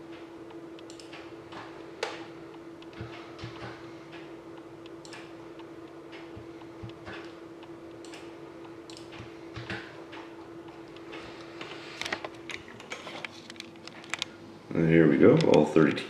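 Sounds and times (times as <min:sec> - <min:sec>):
electrical hum: 0:00.0 - 0:16.0
computer mouse clicks: 0:00.8 - 0:04.3, 0:05.0 - 0:05.4, 0:06.1 - 0:08.3, 0:08.9 - 0:10.3.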